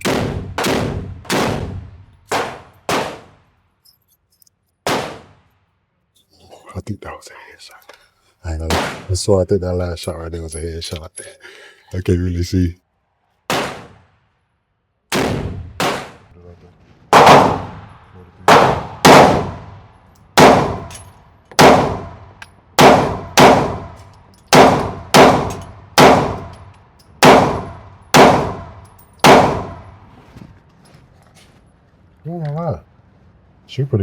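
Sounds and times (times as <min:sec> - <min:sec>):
gunshots with ringing echo: 0:00.0 - 0:03.5, 0:04.8 - 0:05.5, 0:08.6 - 0:09.2, 0:13.5 - 0:14.1, 0:15.1 - 0:16.3, 0:17.1 - 0:26.6, 0:27.2 - 0:30.1.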